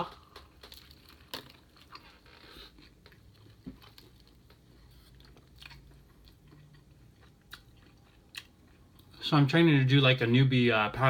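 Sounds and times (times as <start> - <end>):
chewing food: 0.0 - 9.2.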